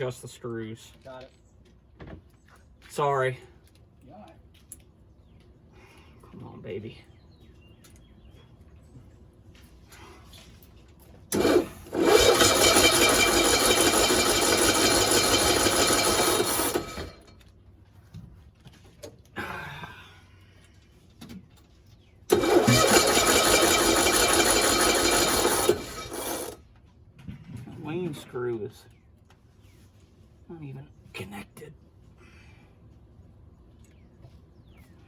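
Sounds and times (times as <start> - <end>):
engine cranking: 11.3 - 17.4, 22.3 - 26.6.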